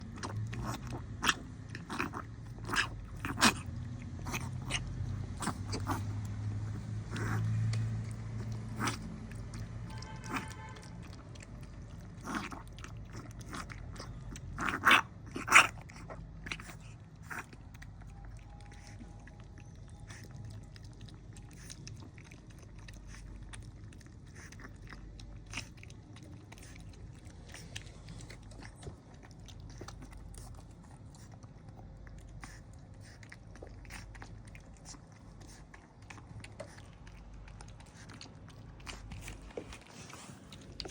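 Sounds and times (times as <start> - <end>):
puppy making sharp sounds: 0.6 - 17.5.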